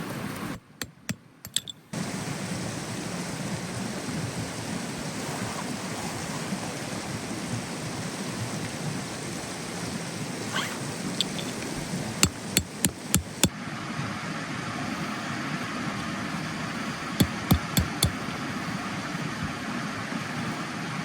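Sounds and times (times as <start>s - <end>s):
steady background hiss: 0.0s - 13.6s
sharp knocks: 0.6s - 1.7s, 12.2s - 13.5s, 17.2s - 18.2s.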